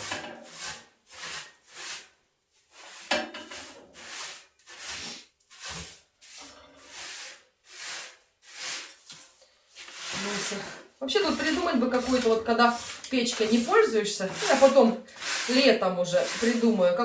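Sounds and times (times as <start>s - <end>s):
broom sweeping debris: 0.0s - 17.0s.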